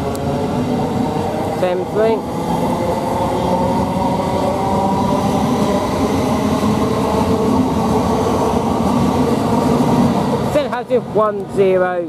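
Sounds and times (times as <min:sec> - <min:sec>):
electric train pulling out: 0:00.0 - 0:11.2.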